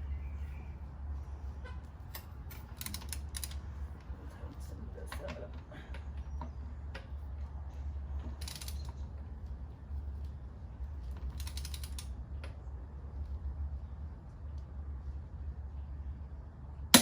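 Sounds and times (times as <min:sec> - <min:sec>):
steady low hum: 0:16.8 - 0:17.0.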